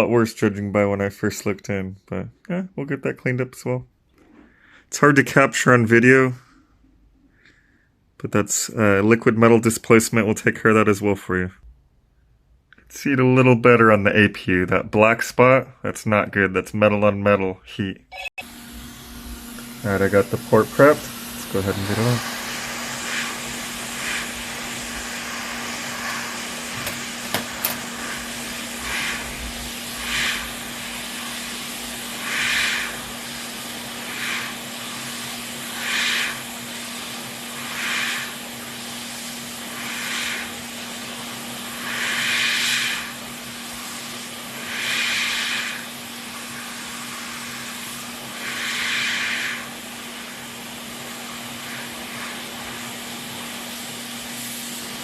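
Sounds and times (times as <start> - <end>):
equipment hum and hiss: 12.6 - 55.0
short hissing bursts: 19.6 - 55.0.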